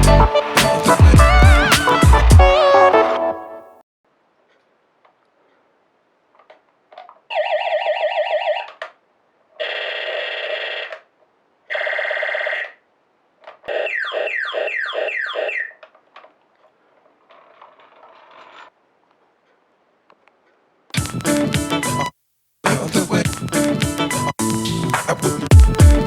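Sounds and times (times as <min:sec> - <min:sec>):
toy laser gun sound effects: 0:07.3 - 0:08.8, 0:09.6 - 0:11.0, 0:11.7 - 0:12.8, 0:13.6 - 0:15.8.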